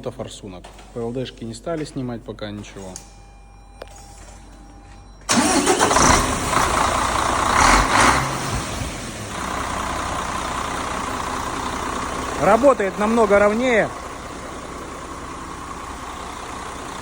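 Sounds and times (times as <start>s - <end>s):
diesel truck engine starting: 5.2s - 17.0s.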